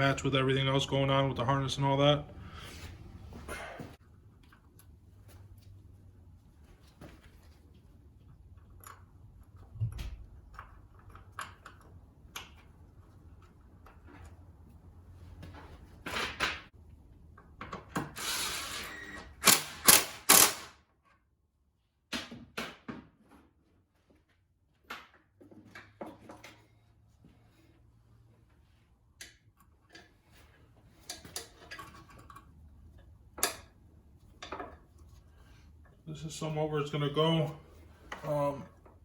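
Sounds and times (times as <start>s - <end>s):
hand tools and metal parts clattering: 29.4s - 39.0s.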